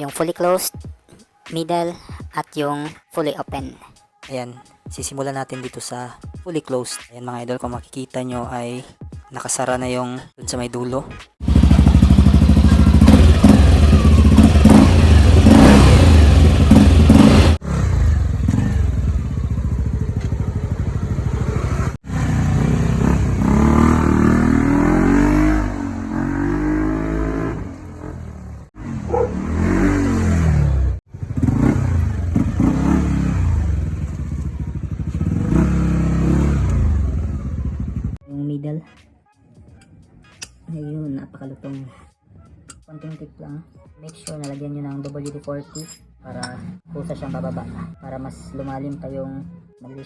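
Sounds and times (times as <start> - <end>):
scooter engine revving: 11.4 - 38.2.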